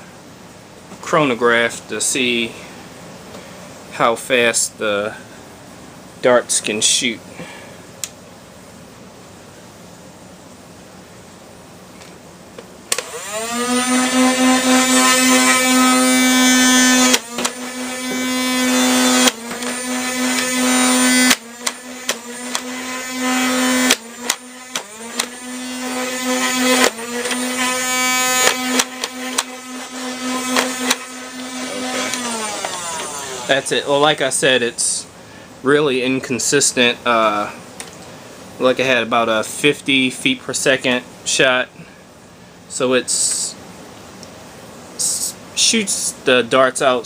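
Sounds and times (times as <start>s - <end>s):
dart blaster motor whine: 12.9s - 33.9s.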